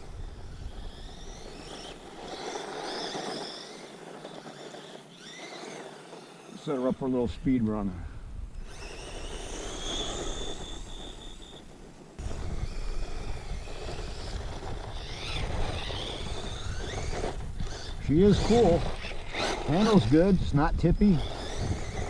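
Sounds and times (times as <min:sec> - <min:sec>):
tyre and wind noise: 0:00.0 - 0:06.5, 0:07.1 - 0:22.0
electric motor whine: 0:00.0 - 0:22.0.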